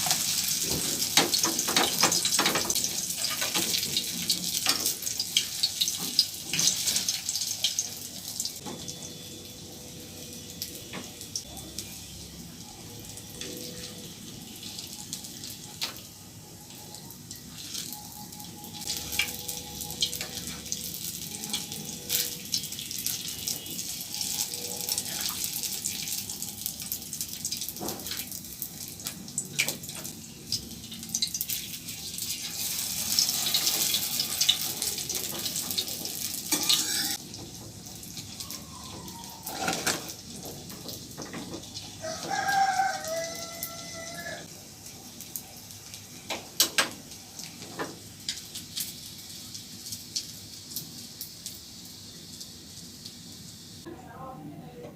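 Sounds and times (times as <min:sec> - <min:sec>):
tap water running and splashing: 0:00.0 - 0:08.6, 0:31.0 - 0:43.9, 0:45.2 - 0:53.4.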